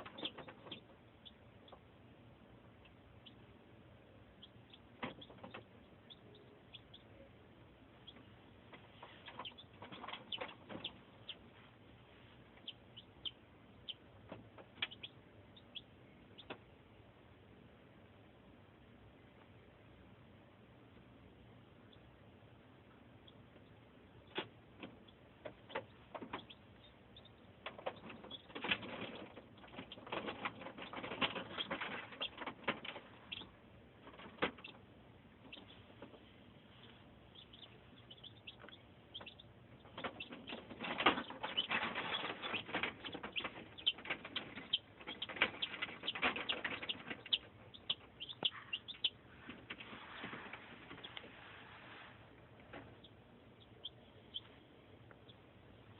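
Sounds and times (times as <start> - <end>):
scratching and tapping of pecking: 0.0 - 1.0, 5.0 - 5.7, 8.1 - 11.4, 24.3 - 26.6, 27.6 - 34.8, 37.4 - 51.3
chicks cheeping: 0.0 - 17.0, 21.5 - 55.9.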